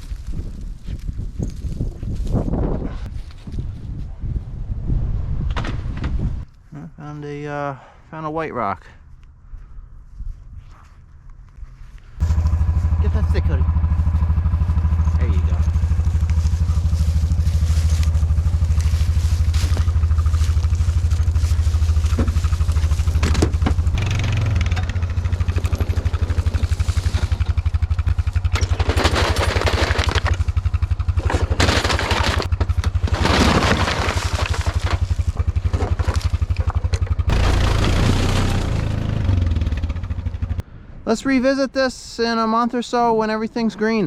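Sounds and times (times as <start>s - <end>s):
rushing scraping noise: 12.2s - 39.4s
riding mower engine droning: 12.2s - 40.8s.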